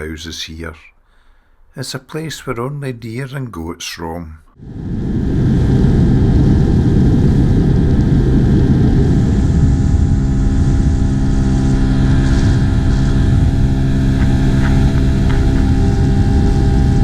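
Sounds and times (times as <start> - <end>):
rough rushing rumble: 4.6 - 17.0
outboard motor droning: 6.9 - 17.0.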